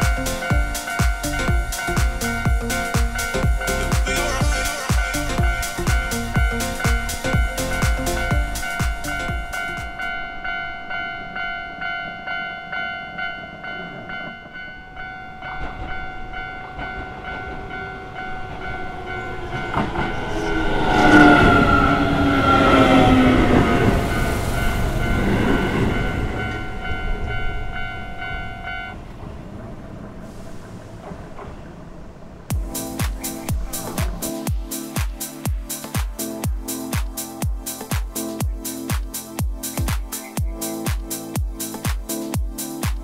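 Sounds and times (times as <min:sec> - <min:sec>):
level crossing warning bell: 0:00.0 - 0:29.1
electric train passing: 0:00.0 - 0:42.8.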